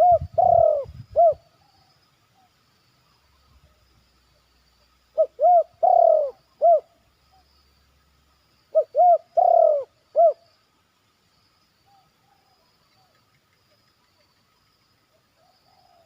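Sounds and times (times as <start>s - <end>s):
dove cooing: 0.0s - 1.8s, 5.2s - 7.4s, 8.7s - 10.4s, 15.4s - 16.0s.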